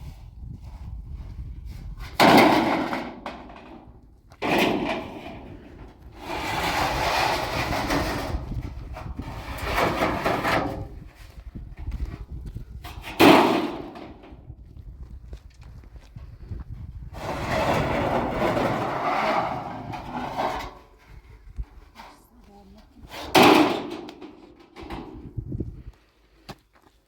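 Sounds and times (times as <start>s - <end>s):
metal scraping and rattling: 2.0s - 11.1s, 12.8s - 14.5s, 17.1s - 25.4s
metal sheets clanging: 4.4s - 6.8s, 23.0s - 25.2s.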